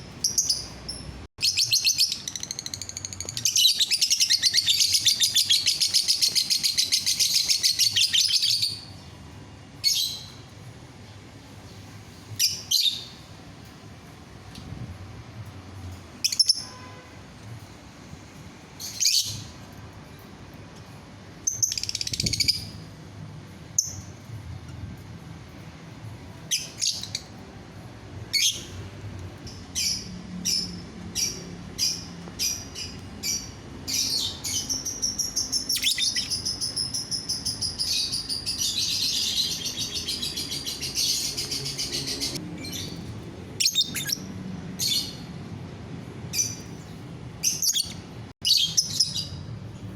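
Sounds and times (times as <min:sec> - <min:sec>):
lovebird chirping and trilling: 0:00.2 - 0:08.9, 0:16.2 - 0:16.7, 0:18.8 - 0:19.5, 0:21.4 - 0:22.8, 0:26.5 - 0:27.3, 0:28.3 - 0:28.8, 0:29.5 - 0:43.0, 0:43.6 - 0:45.3, 0:46.3 - 0:49.4.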